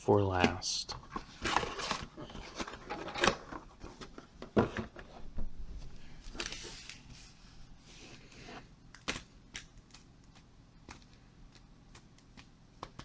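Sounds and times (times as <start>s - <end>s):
packaging rustling: 0.9s - 7.3s.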